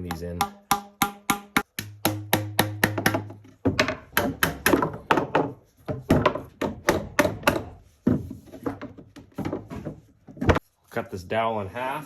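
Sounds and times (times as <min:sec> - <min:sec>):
hammer tapping metal eyelets: 0:00.0 - 0:07.8.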